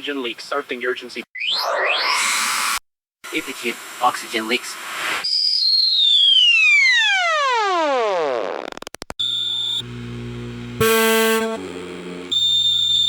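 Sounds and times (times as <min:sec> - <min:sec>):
buzzy tone sweeping down: 0:07.1 - 0:13.0
quick clicks: 0:08.6 - 0:09.2
harsh horn-like alarm blasts: 0:10.8 - 0:12.8.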